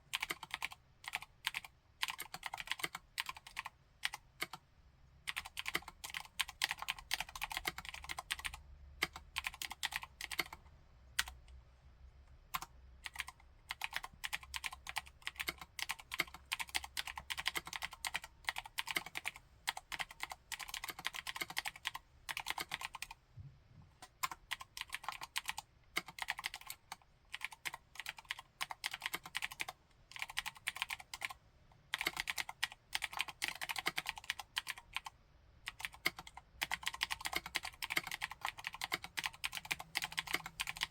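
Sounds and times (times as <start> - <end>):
clicky mechanical keyboard typing: 0.1 - 4.6, 5.2 - 11.6, 12.5 - 23.2, 23.9 - 40.9.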